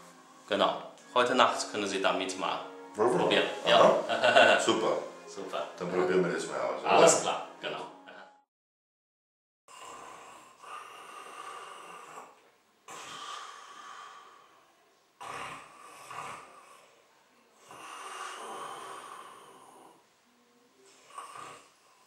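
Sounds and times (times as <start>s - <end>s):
man breathing heavily in sleep: 9.7s - 14.6s, 17.6s - 20.0s.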